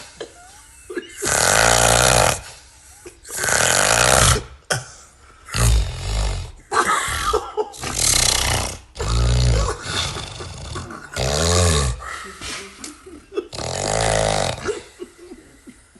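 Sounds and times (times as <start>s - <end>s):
man snoring: 1.2s - 2.6s, 3.2s - 4.6s, 5.5s - 6.7s, 7.8s - 12.2s, 13.4s - 15.0s.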